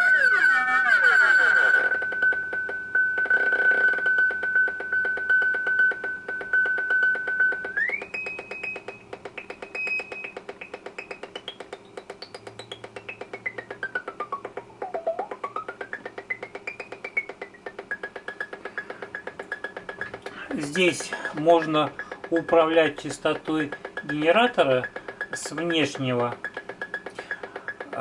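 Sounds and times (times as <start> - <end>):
high whistling synth tone: 2.0 - 9.0.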